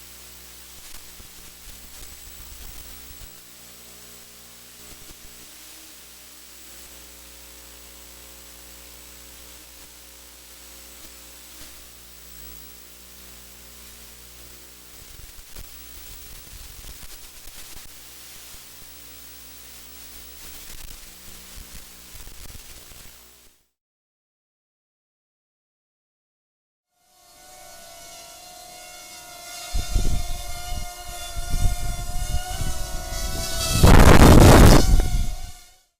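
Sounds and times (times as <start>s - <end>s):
low electrical hum: 0.0s - 22.2s
static hiss: 0.0s - 23.6s, 29.7s - 35.9s.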